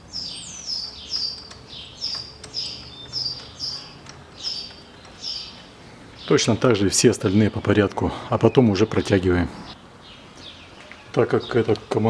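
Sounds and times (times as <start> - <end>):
small bird chirping: 0.0 - 7.9.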